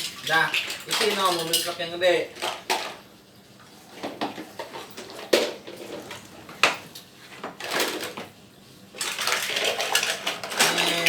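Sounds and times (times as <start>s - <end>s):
toy trucks clattering: 0.0s - 1.8s, 9.0s - 11.0s
small hard pieces rattling: 0.0s - 2.9s, 9.0s - 11.0s.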